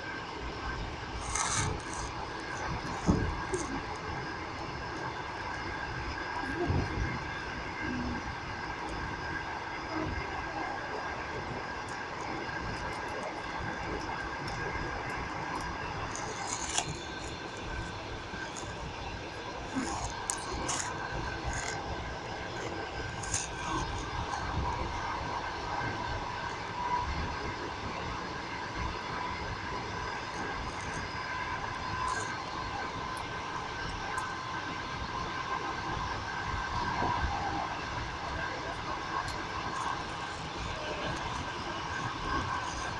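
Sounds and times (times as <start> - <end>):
faint high whine: 0.0 - 42.9
train carriage rumble on rails: 0.0 - 42.9.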